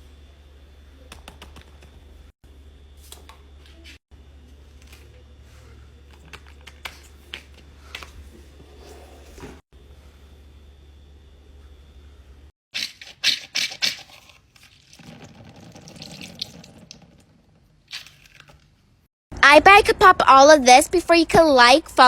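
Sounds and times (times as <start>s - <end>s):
steady low hum: 0.0s - 12.5s.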